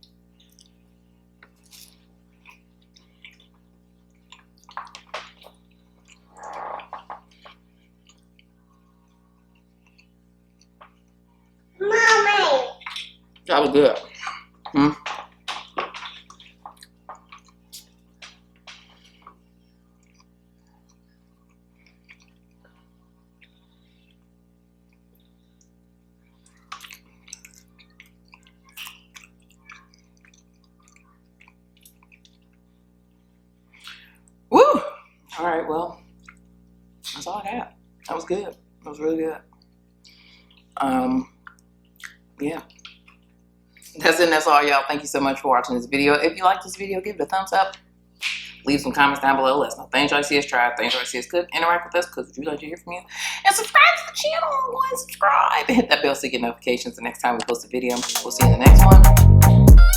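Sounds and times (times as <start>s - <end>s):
wet chewing and lip smacks: 0.0s - 11.2s, 12.8s - 13.5s, 14.1s - 32.7s, 33.7s - 34.4s, 36.1s - 37.2s, 39.5s - 40.8s, 41.4s - 44.0s
faint steady hum: 0.0s - 59.9s.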